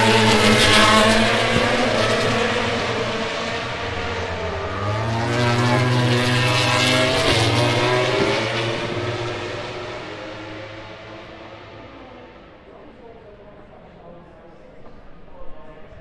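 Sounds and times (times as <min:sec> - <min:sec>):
racing motorcycle passing at high revs: 0:00.0 - 0:11.8.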